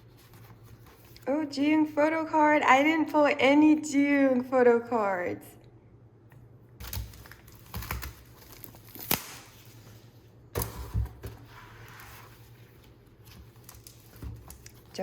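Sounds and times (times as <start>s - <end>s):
paper and plastic rustling: 6.8s - 15.0s.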